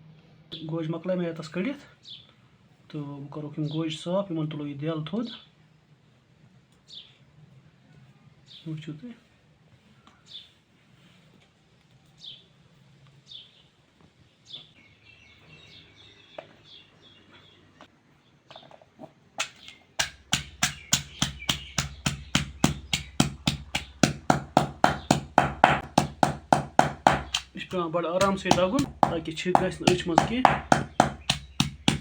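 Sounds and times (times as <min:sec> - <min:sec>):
small birds chirping: 0:01.4 - 0:04.0, 0:06.8 - 0:09.2, 0:10.0 - 0:10.6, 0:11.9 - 0:32.0
pestle pounding in a mortar: 0:19.4 - 0:32.0.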